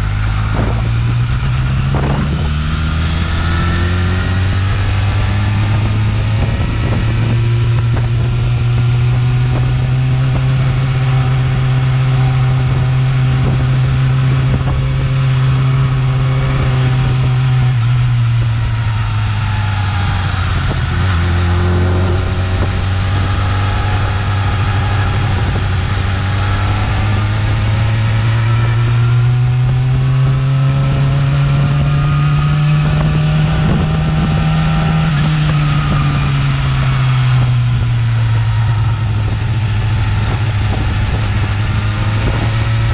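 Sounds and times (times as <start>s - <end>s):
motorcycle engine running: 0.0s - 42.9s.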